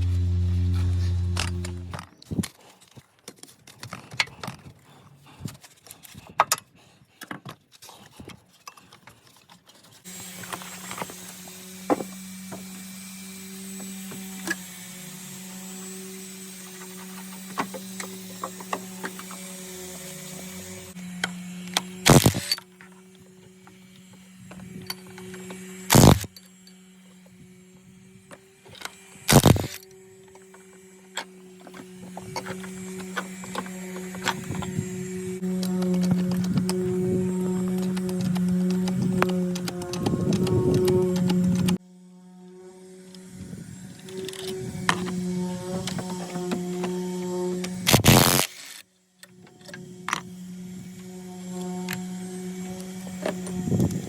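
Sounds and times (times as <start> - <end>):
power tool bursts: 0.0 - 2.0, 10.1 - 41.8, 47.6 - 48.8
steady low hum: 0.0 - 2.0.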